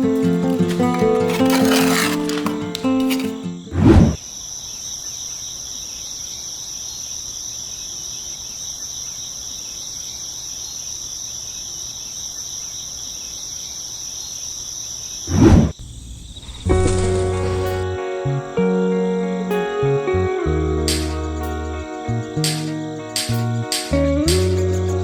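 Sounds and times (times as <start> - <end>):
crickets trilling: 0.0 - 18.4.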